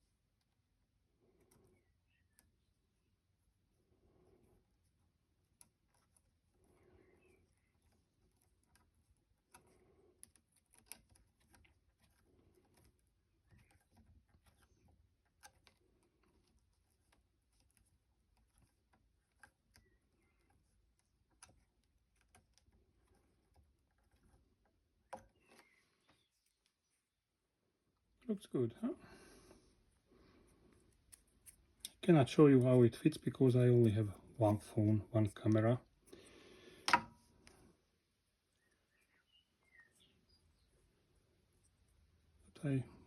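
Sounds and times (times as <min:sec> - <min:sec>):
small parts clicking and tapping: 0:04.5 - 0:26.8.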